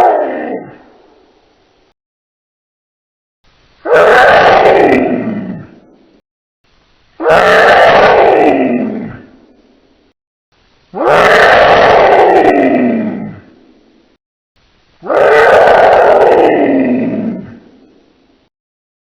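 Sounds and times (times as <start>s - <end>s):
dinosaur roar: 0.0s - 0.8s, 3.9s - 5.9s, 7.2s - 9.4s, 11.0s - 13.6s, 15.0s - 17.9s.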